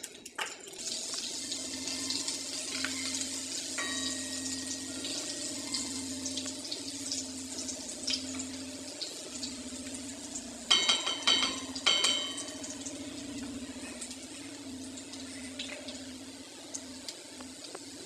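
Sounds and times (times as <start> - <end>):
steady hiss: 0.8 - 18.0
metal clinks on a pot: 10.7 - 12.6.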